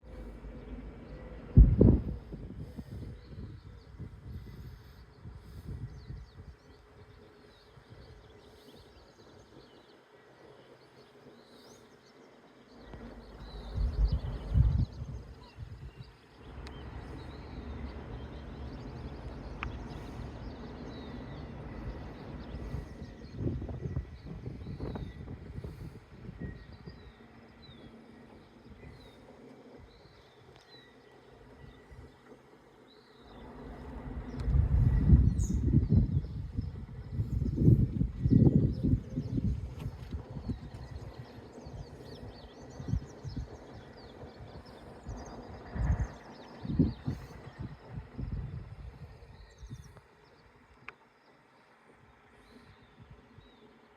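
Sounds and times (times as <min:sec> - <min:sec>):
low rumble: 0:00.0 - 0:06.5, 0:12.8 - 0:27.0, 0:33.2 - 0:49.9
faint outdoor hiss: 0:00.0 - 0:53.9
small birds chirping: 0:00.0 - 0:53.9.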